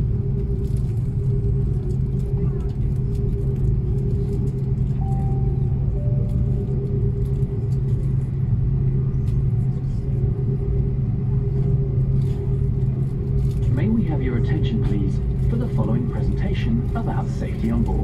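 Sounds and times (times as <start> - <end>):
airliner cabin engine drone: 0.0 - 18.0
steady tone: 5.0 - 8.9.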